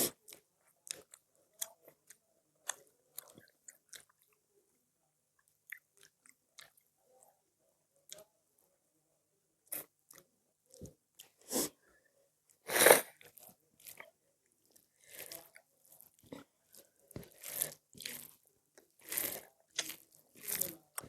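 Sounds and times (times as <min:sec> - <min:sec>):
person chewing crunchy food: 0:00.0 - 0:04.3, 0:13.0 - 0:14.1, 0:14.7 - 0:21.0.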